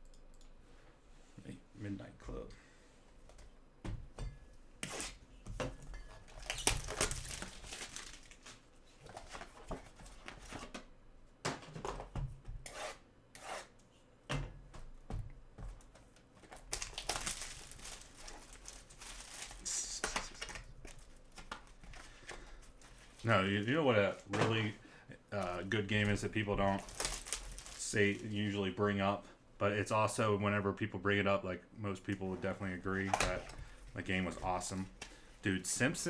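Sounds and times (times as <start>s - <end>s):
cards rustling: 6.3s - 8.6s, 16.4s - 24.8s, 25.4s - 28.5s
wrapper crinkling and tearing: 6.3s - 8.7s, 16.4s - 21.9s, 26.6s - 28.4s.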